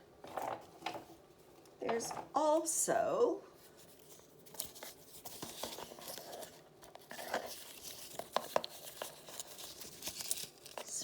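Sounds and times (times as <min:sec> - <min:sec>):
paper crinkling and rustling: 0:03.6 - 0:11.0.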